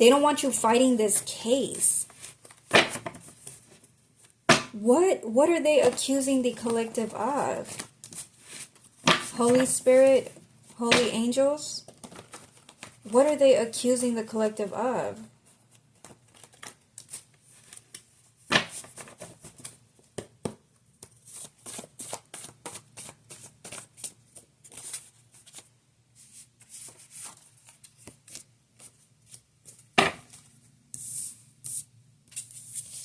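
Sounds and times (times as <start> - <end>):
cards knocking on table: 30.0 - 30.3.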